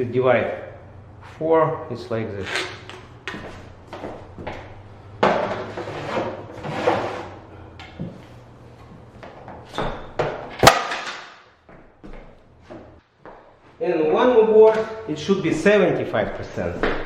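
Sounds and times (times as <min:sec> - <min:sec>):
plank dropping on floor: 0:10.2 - 0:11.4.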